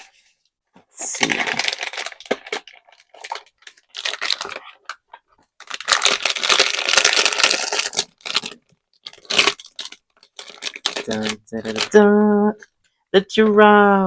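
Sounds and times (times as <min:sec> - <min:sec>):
wrapper crinkling and tearing: 0:01.0 - 0:12.0.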